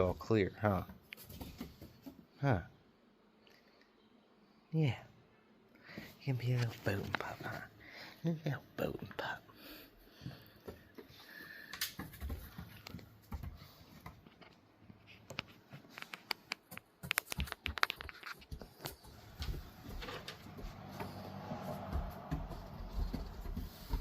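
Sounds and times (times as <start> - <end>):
puppy claws tapping and scuffing: 0.8 - 2.3, 10.2 - 24.0.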